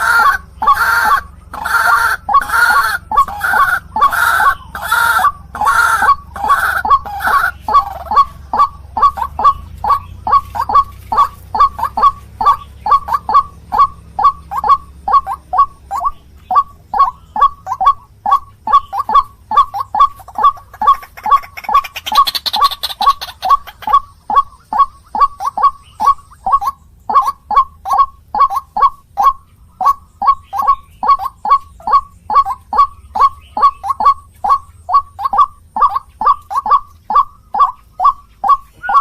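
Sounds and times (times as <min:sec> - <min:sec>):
waterhen calling repeated notes: 0:00.0 - 0:39.0.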